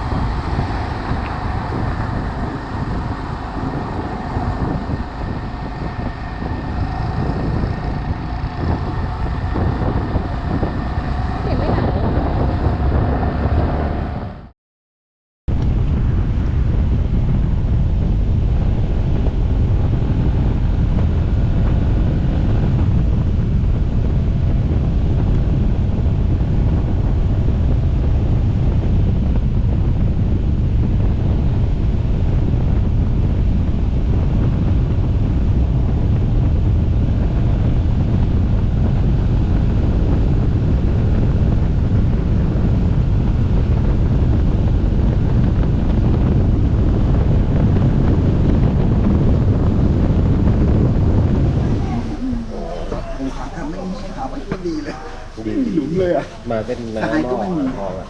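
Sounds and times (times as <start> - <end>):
wind buffeting microphone: 0.0 - 14.5, 15.5 - 58.0
steady tones: 50.6 - 58.0.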